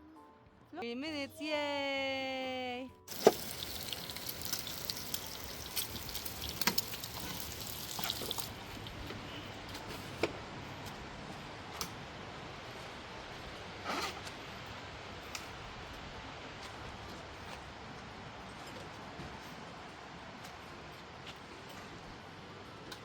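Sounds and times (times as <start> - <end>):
water splashing and trickling: 3.1 - 9.6.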